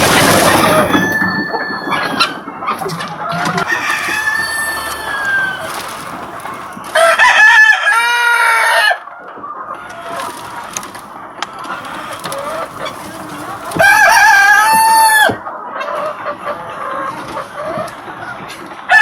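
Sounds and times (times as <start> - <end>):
chickens clucking: 0.0 - 19.0
rooster crowing: 0.2 - 2.5, 3.5 - 5.9, 6.9 - 9.0, 13.8 - 15.4.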